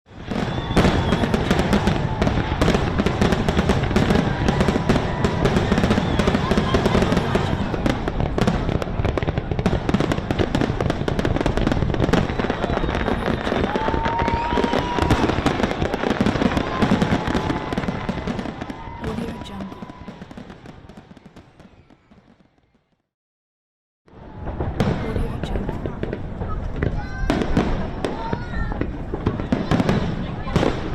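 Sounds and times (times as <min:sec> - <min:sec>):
whistling rocket: 0:00.1 - 0:10.0, 0:11.4 - 0:22.9
fireworks crackling and booming: 0:00.1 - 0:23.1, 0:24.1 - 0:30.9
crowd voices: 0:00.2 - 0:20.3, 0:24.2 - 0:30.9.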